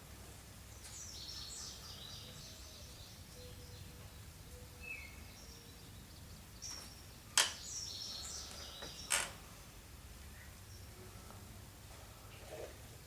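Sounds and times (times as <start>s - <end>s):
birds chirping: 0.7s - 11.3s.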